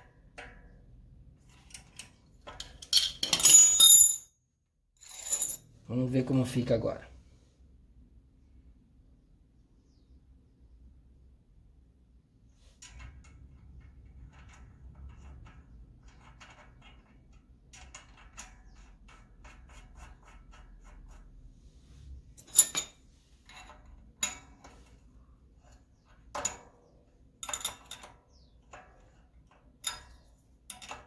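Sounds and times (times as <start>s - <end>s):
sharp metallic clinks of tools: 2.9s - 4.3s, 22.4s - 23.0s.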